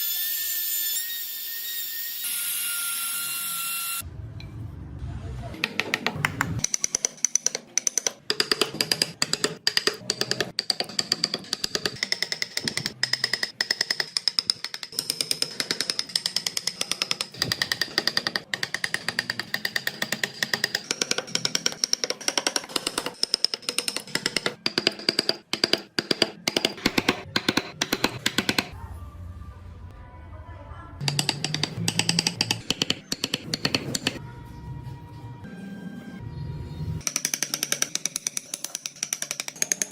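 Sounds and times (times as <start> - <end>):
hammer tapping on chisel: 5.6 - 28.7, 31.0 - 34.2, 37.0 - 39.9.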